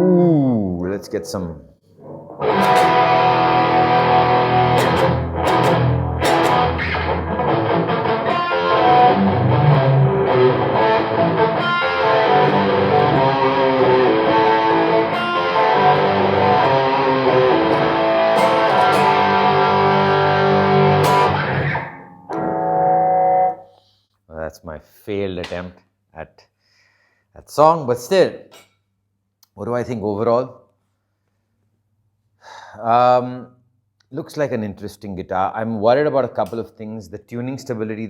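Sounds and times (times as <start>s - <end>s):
electric guitar through amplifier: 2.0s - 23.6s.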